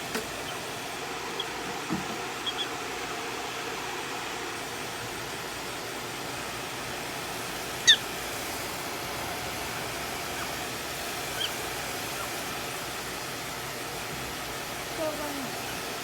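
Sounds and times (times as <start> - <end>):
hair dryer blowing: 0.0 - 16.0
prairie dog chirps: 0.2 - 0.7, 1.3 - 3.6, 7.8 - 8.2, 10.2 - 12.6.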